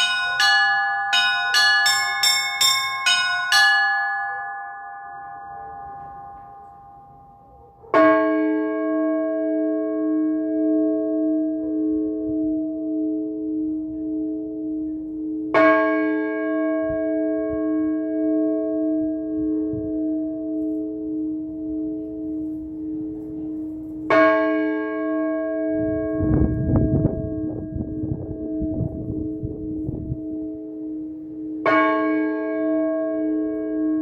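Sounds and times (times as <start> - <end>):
church bell tolling: 0.0 - 34.0
loud low rumbling: 25.8 - 30.4.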